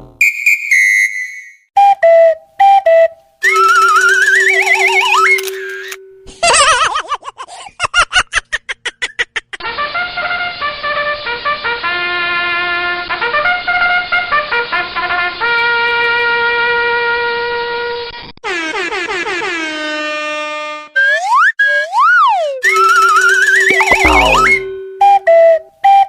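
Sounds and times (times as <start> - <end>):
rapid repeated blips: 23.7 - 24.7
warbling falling tone: 23.7 - 24.7
trumpet-like tune: 23.7 - 24.8.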